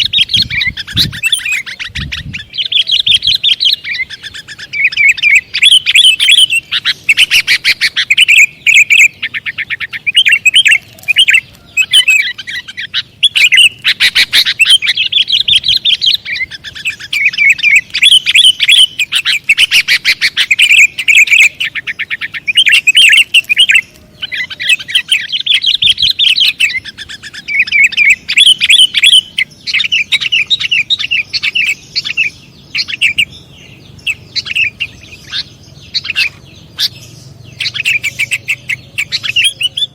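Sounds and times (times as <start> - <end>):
birds singing and chattering: 0.0 - 39.9.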